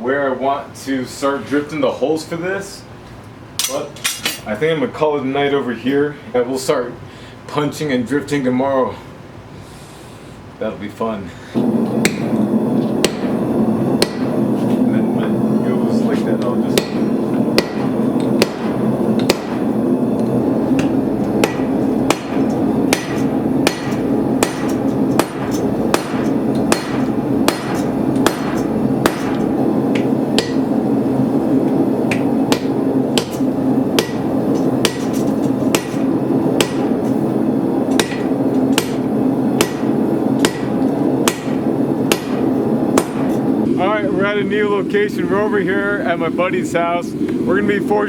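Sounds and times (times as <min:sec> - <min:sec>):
steady low hum: 0:00.0 - 0:48.0
hammer striking steel on anvil: 0:12.0 - 0:12.4, 0:13.0 - 0:13.4, 0:14.0 - 0:14.4, 0:16.7 - 0:19.7, 0:20.7 - 0:30.7, 0:32.1 - 0:37.2, 0:37.9 - 0:43.5.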